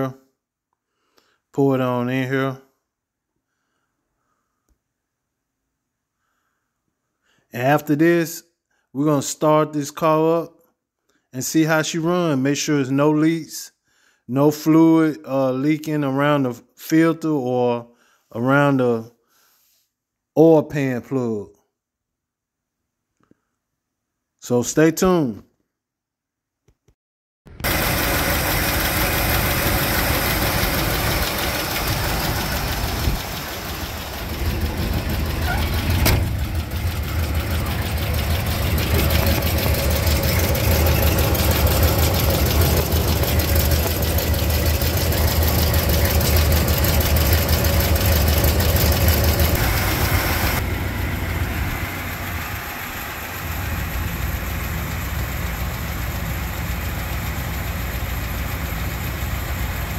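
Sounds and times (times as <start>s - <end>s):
car engine idling: 27.6s - 59.9s.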